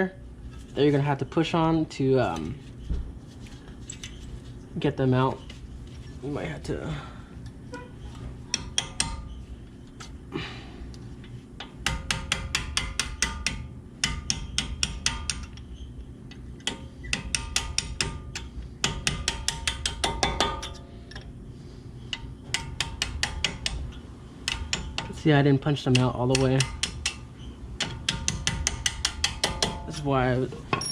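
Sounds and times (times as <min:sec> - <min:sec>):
hammer tapping steel punch: 0:08.5 - 0:09.4, 0:11.6 - 0:15.7, 0:16.3 - 0:21.3, 0:22.1 - 0:25.2, 0:25.8 - 0:27.2, 0:27.8 - 0:29.9.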